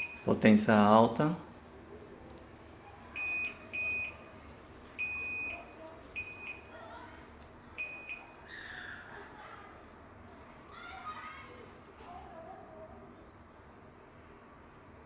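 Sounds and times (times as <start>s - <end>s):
microwave keypad beeps: 0.0s - 0.4s, 3.2s - 4.3s, 5.0s - 6.7s, 7.8s - 8.4s.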